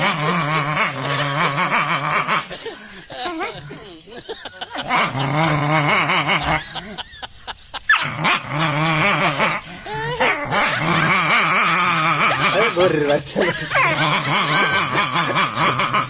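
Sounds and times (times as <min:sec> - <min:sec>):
dog growling and whining: 0:07.9 - 0:12.8.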